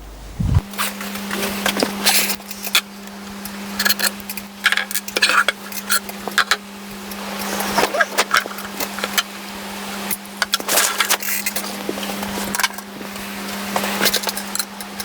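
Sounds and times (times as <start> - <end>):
steady low hum: 0.0 - 0.7.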